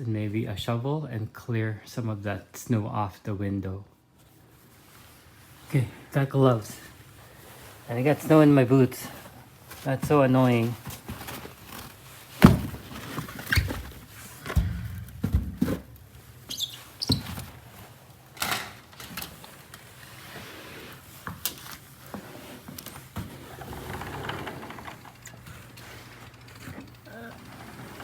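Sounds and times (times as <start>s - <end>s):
thumps and knocks of handling gear: 9.9s - 17.6s.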